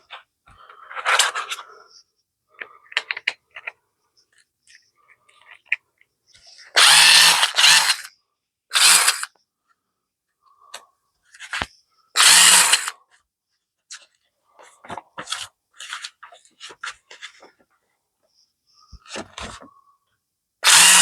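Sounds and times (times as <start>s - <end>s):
cordless screwdriver motor hum: 6.8s - 8.1s, 12.2s - 12.9s, 20.6s - 21.0s.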